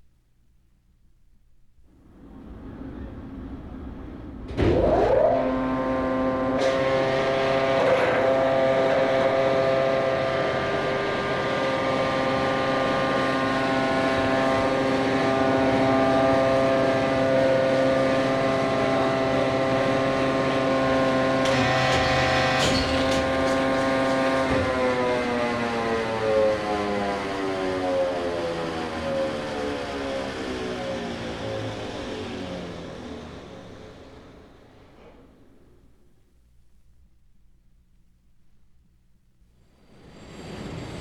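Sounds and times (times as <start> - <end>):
loud motor-like drone: 4.6 - 33.8.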